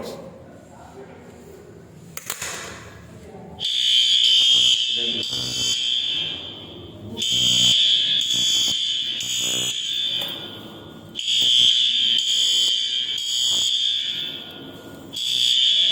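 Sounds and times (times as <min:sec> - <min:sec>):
fire alarm high-pitched tone: 0:03.6 - 0:15.9.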